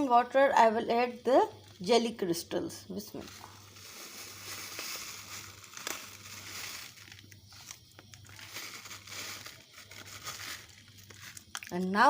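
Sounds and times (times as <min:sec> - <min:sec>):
boiling water hiss: 0:02.7 - 0:12.0
plastic packet crinkling: 0:03.1 - 0:12.0.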